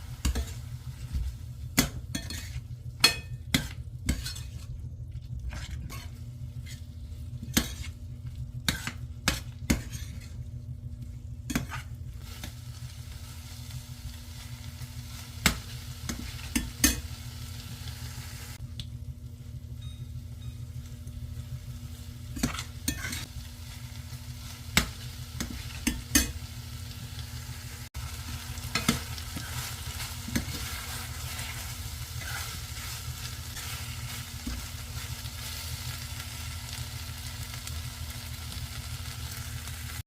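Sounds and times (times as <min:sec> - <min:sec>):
steady low hum: 0:00.0 - 0:40.0
food sizzling in a pan: 0:11.5 - 0:18.6, 0:21.2 - 0:40.0.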